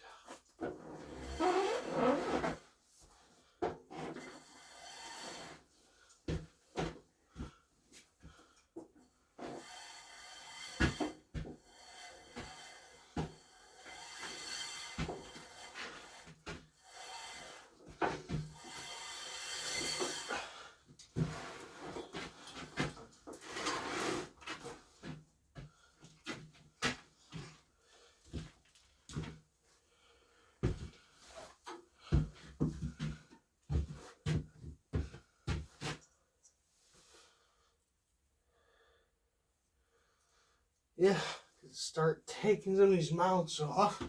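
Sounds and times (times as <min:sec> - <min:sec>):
scraping and rubbing: 0:21.2 - 0:24.8.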